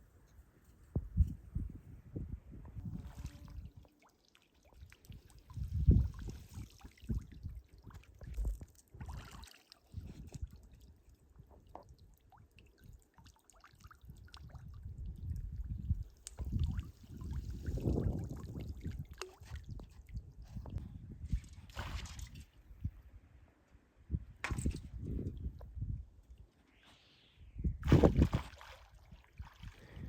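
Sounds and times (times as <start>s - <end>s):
wind rumbling on microphone: 0.8s - 3.8s, 5.1s - 9.2s, 9.9s - 11.9s, 14.1s - 23.4s, 24.0s - 30.0s
water splashing and trickling: 2.8s - 22.9s, 27.8s - 30.0s.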